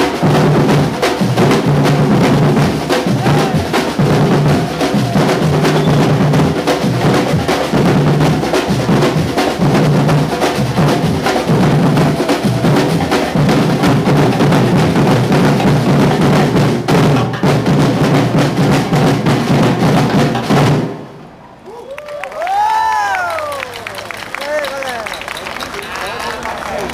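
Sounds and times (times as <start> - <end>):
deep bass drums: 0.0 - 20.9
drum ensemble playing: 0.0 - 21.1.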